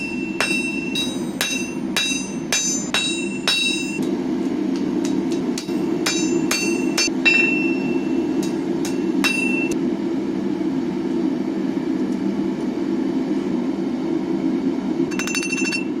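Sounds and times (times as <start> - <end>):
hammer striking steel anvil: 0.0 - 4.1, 4.8 - 9.8.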